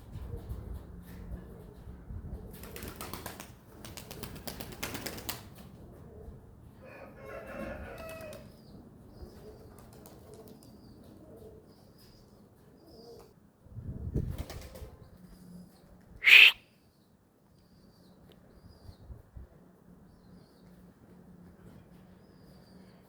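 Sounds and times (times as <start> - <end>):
pigeon wings flapping: 2.5 - 5.7, 14.3 - 14.8
faint high chirps: 16.2 - 16.6
sharp loud sound: 16.2 - 16.6.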